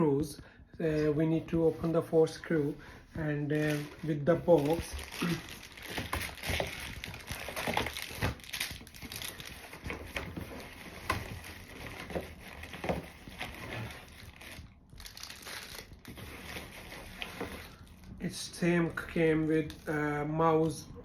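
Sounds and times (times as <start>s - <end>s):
plastic bags crinkling: 3.4s - 18.2s.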